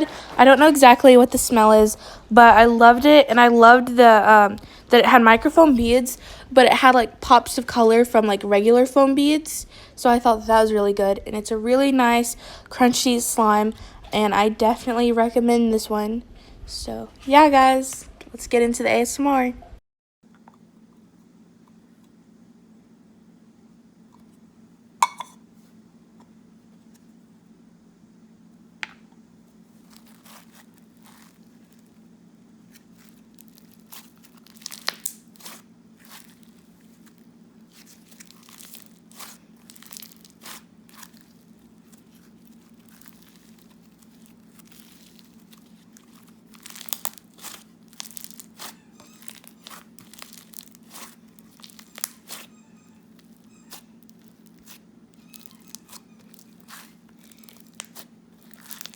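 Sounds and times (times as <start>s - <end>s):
foam slime crackling and popping: 29.7s - 32.0s, 32.6s - 58.9s.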